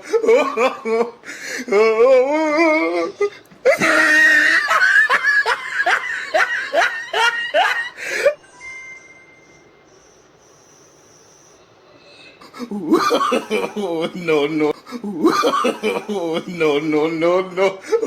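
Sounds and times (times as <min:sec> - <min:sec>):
person laughing loudly: 0:00.0 - 0:08.4, 0:12.6 - 0:18.0.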